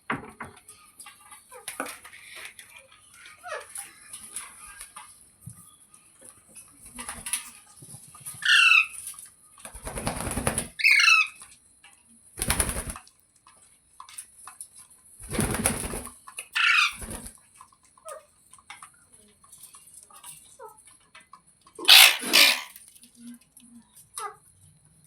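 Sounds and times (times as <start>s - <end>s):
parrot squawking: 8.4s - 9.0s, 10.8s - 11.4s, 16.6s - 17.0s, 21.8s - 22.8s
wings flapping: 9.7s - 10.8s, 12.4s - 13.0s, 15.2s - 16.2s, 16.8s - 17.4s, 21.9s - 22.8s.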